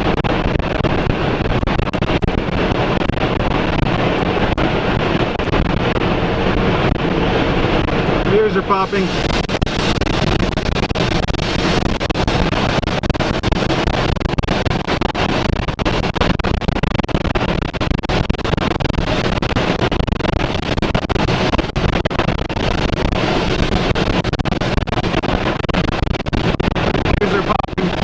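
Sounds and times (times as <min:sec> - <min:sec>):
tornado wind roaring: 0:00.0 - 0:14.1, 0:26.4 - 0:28.0.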